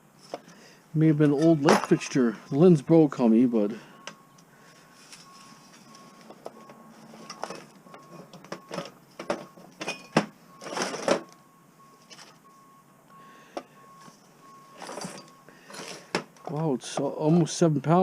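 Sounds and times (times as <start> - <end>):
rustle: 0.0 - 17.8
faint high beeping tone: 2.0 - 15.6.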